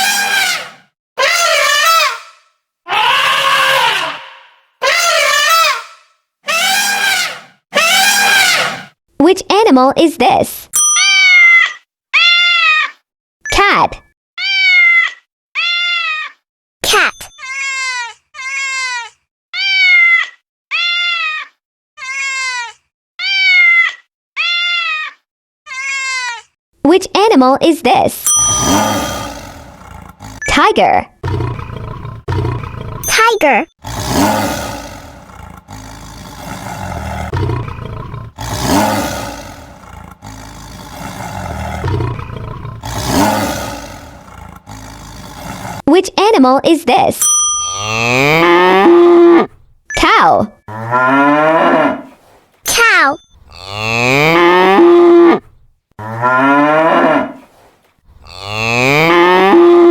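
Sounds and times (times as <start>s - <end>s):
cat meowing: 14.4s - 16.4s, 19.6s - 22.6s
tiger roaring: 28.4s - 30.5s, 31.1s - 33.2s, 33.8s - 45.9s.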